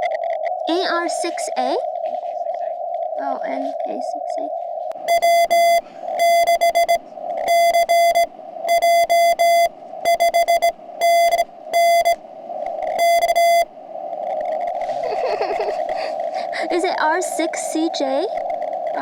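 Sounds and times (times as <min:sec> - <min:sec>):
radio receiver hiss: 0:04.9 - 0:19.0
morse code beeps: 0:05.0 - 0:19.0.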